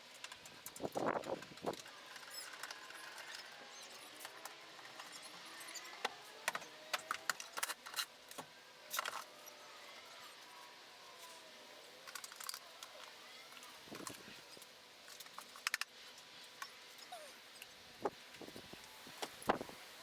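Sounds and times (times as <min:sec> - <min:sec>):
faint squeaks: 0:16.6 - 0:17.6.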